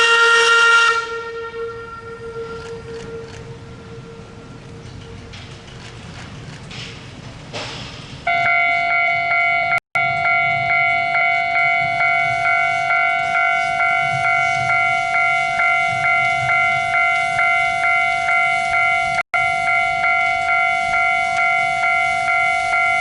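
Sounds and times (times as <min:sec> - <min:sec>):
electronic warning bell ringing: 0:08.3 - 0:23.0.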